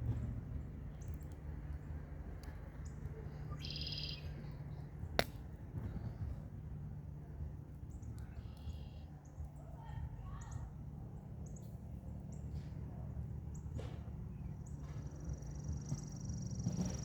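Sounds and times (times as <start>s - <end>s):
campfire burning: 0.2s - 8.4s
birds calling: 2.8s - 5.2s
fire crackling pops: 5.2s - 5.6s.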